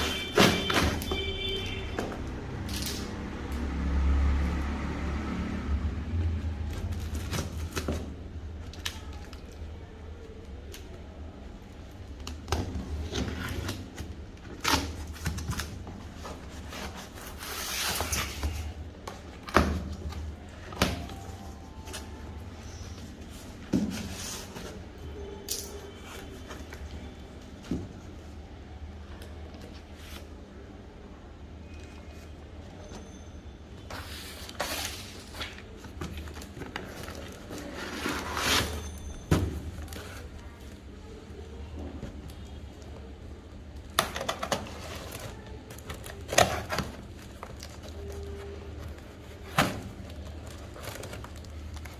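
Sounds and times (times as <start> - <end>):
packaging rustling: 44.2 - 51.9.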